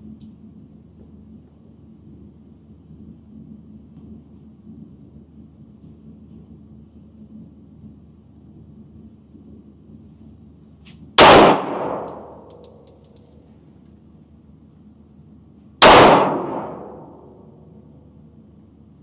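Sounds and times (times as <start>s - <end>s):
handgun shots echoing: 11.2s - 13.2s, 15.8s - 17.2s.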